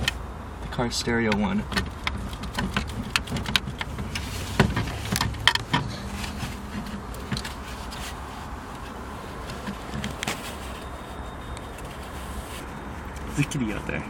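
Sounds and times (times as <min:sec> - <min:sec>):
low steady rumble: 0:00.0 - 0:14.0
plastic parts clicking and knocking: 0:01.7 - 0:05.9.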